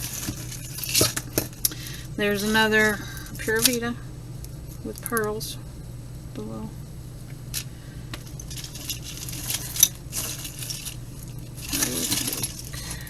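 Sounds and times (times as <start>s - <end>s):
jewelry clinking and rustling: 0.0s - 4.0s, 7.5s - 13.0s.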